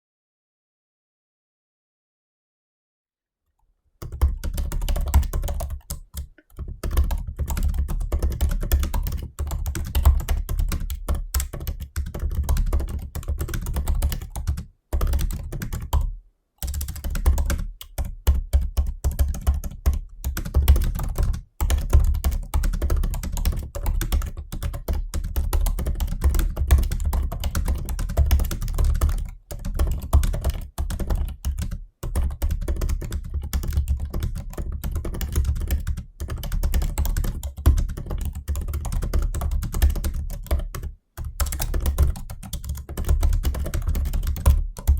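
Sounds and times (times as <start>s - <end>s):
laptop keyboard typing: 4.0s - 44.9s.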